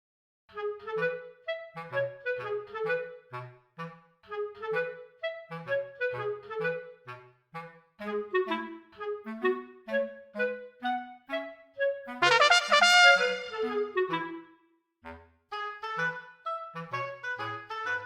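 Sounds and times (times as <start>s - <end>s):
bouncy instrumental music: 12.1s - 14.2s.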